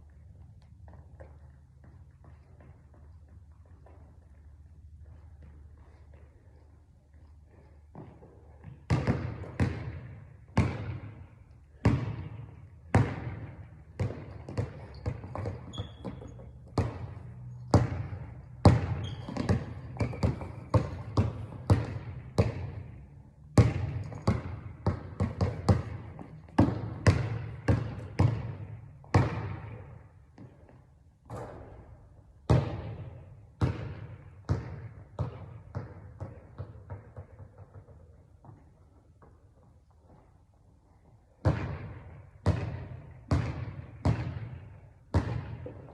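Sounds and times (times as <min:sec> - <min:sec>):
basketball bouncing on hard court: 0:07.6 - 0:39.4, 0:41.4 - 0:45.9.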